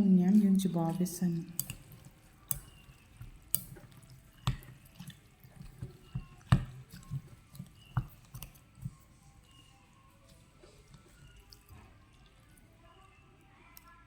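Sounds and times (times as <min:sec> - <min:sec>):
wet squelching of noodles: 0:00.0 - 0:14.0
utensil clicking against bowl: 0:01.5 - 0:08.6.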